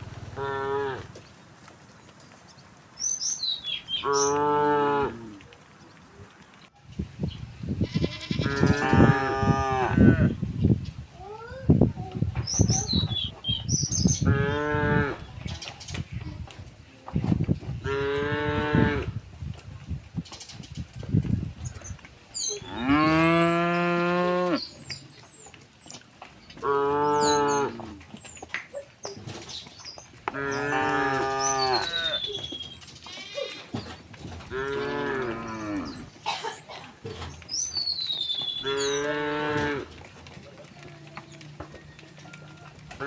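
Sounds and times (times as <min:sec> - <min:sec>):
cows mooing: 0:00.0 - 0:01.2, 0:03.9 - 0:05.4, 0:08.0 - 0:10.4, 0:14.2 - 0:15.3, 0:17.8 - 0:19.2, 0:22.5 - 0:24.8, 0:26.6 - 0:28.1, 0:30.3 - 0:33.8, 0:34.4 - 0:36.3, 0:38.3 - 0:40.2
small birds chirping: 0:00.0 - 0:09.6, 0:10.4 - 0:18.0, 0:20.1 - 0:43.0.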